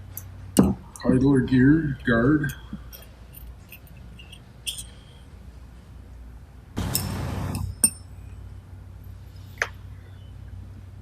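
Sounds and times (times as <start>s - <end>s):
metal tools clinking: 0.2s - 5.2s, 6.8s - 8.4s.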